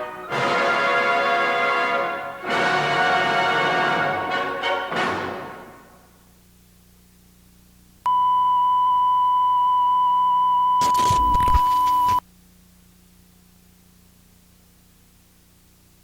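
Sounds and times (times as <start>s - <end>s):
faint low hum: 5.8s - 16.0s.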